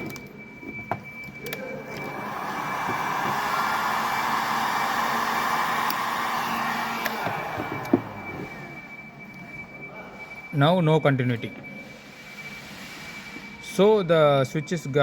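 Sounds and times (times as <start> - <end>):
hot-air blower running: 1.8 - 8.7.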